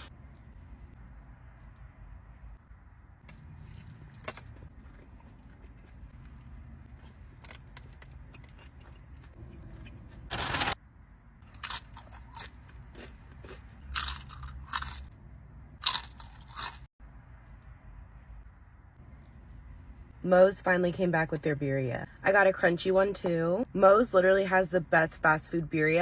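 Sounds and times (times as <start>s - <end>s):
taco crunching: 2.9s - 10.8s, 11.4s - 15.2s, 15.8s - 17.7s
chewing crunches: 3.1s - 10.1s, 11.5s - 15.1s, 15.8s - 16.9s.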